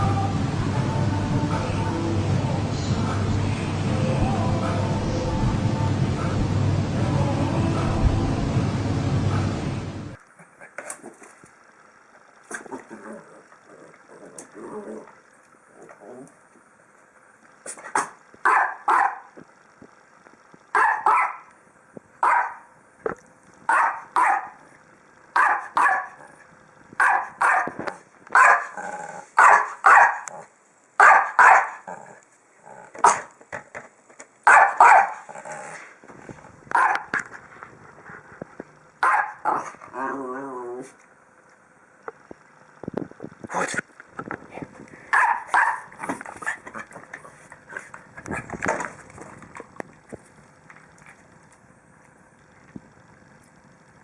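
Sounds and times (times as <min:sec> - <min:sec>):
dog barking: 0:17.9 - 0:19.3, 0:20.7 - 0:21.5, 0:22.2 - 0:22.7, 0:23.7 - 0:24.6, 0:25.4 - 0:26.2, 0:27.0 - 0:27.8, 0:28.4 - 0:28.8, 0:29.4 - 0:30.4, 0:31.0 - 0:31.9, 0:33.0 - 0:33.3, 0:34.4 - 0:35.3, 0:36.7 - 0:37.1, 0:39.0 - 0:39.7, 0:45.1 - 0:45.9.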